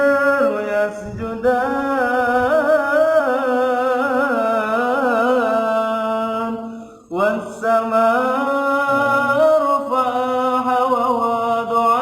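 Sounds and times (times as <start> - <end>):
person reciting melodically: 0.0 - 12.0
breath: 6.6 - 7.1.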